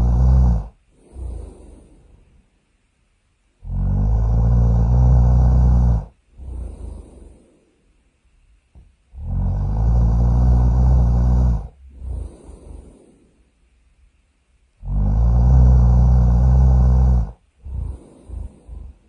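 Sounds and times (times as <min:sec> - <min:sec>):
cartoon snoring: 0:00.0 - 0:02.0, 0:03.6 - 0:07.5, 0:09.1 - 0:13.2, 0:14.8 - 0:19.0
soft breath out: 0:00.0 - 0:02.6, 0:05.6 - 0:08.0, 0:10.9 - 0:13.7, 0:16.0 - 0:19.0.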